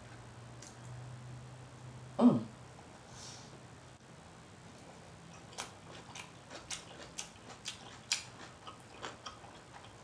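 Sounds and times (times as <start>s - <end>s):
wet mouth smacking chewing: 5.3s - 10.0s.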